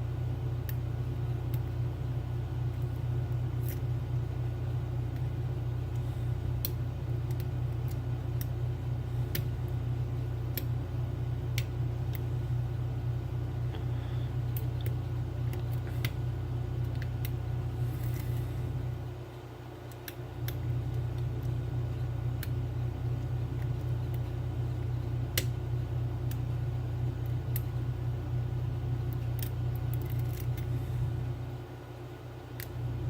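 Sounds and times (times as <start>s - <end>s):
low hum: 0.0s - 33.0s.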